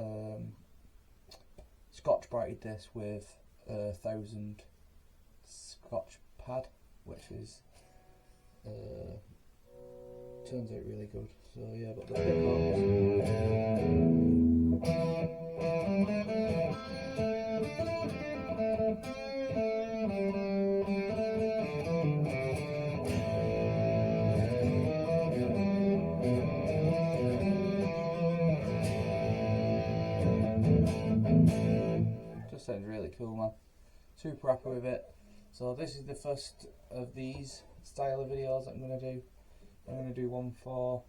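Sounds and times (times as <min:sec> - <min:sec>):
electric guitar through amp: 0:12.0 - 0:32.6.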